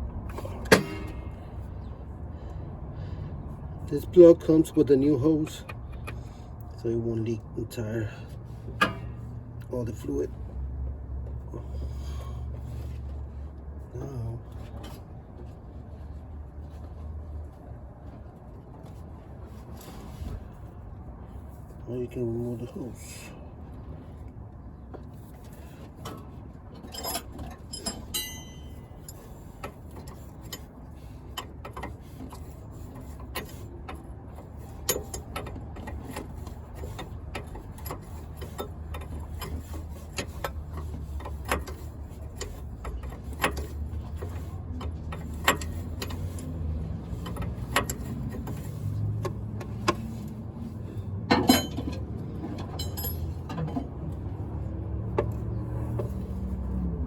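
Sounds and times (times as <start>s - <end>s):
hand tools clicking and clinking: 26.8s - 30.6s, 51.3s - 54.0s
short metallic ring: 27.0s - 29.2s, 51.3s - 51.9s, 52.8s - 53.4s.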